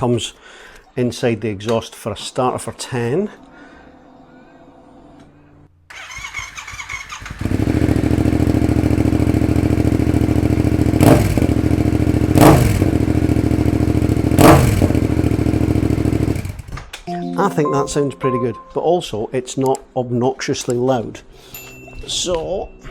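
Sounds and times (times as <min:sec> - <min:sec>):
starter motor cranking: 0:05.9 - 0:07.6
motorcycle engine idling and revving: 0:05.9 - 0:16.8.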